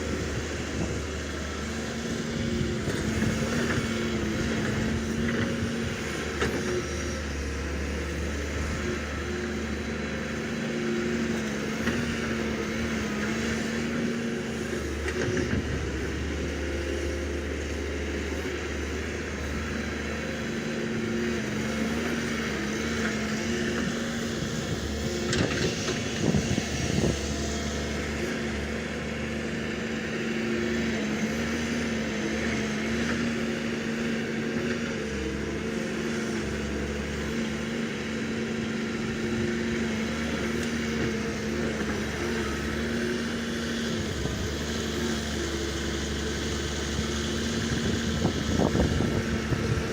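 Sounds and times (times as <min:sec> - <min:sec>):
excavator diesel engine running: 0:00.0 - 0:49.9.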